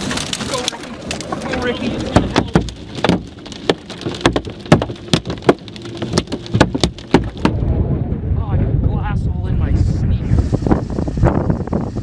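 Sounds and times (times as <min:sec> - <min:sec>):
debris and rain hitting a car: 0:00.0 - 0:07.6
wind and road rumble: 0:00.0 - 0:12.0.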